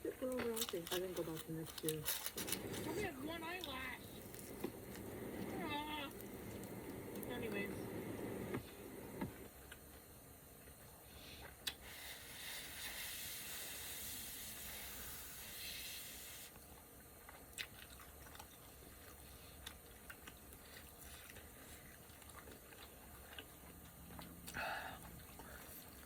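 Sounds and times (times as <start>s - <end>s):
crunchy chewing: 0.1s - 8.6s, 16.5s - 26.0s
steady hiss: 1.8s - 9.5s, 10.9s - 16.6s.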